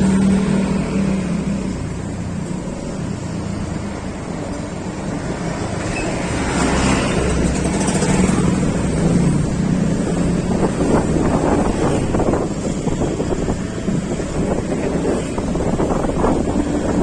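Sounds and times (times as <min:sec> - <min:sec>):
vehicle engine hum: 0:00.0 - 0:17.0
wind noise on microphone: 0:04.7 - 0:17.0.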